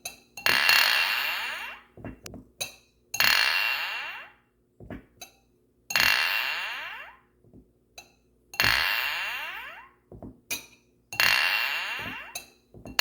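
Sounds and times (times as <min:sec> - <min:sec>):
light taps and knocks: 0:02.0 - 0:02.6.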